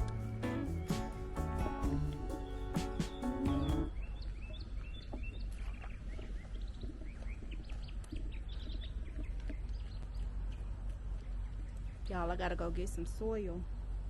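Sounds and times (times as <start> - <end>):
low rumble: 0.0 - 4.5
songbirds chirping: 0.0 - 12.5.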